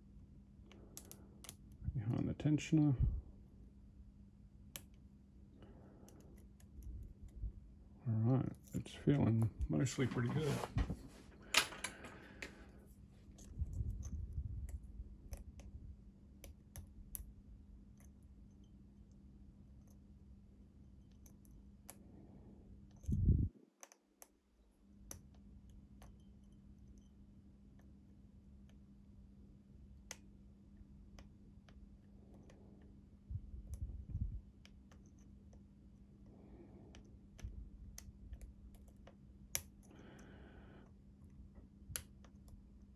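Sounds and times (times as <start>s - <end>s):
low rumble of handling: 0.6s - 3.5s, 5.5s - 19.2s, 30.8s - 40.1s
lock pick clicking pins: 0.7s - 1.7s.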